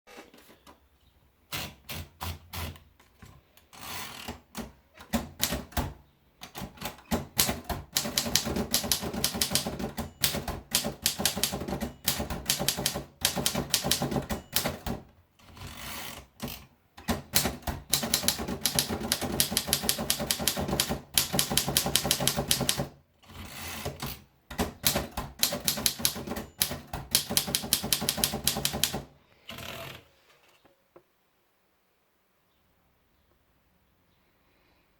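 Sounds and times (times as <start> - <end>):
manual typewriter typing: 3.7 - 29.9.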